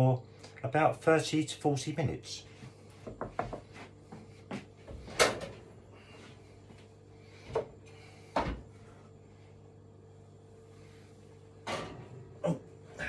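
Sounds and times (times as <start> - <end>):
oven door and pie tin clunking: 11.6 - 12.5.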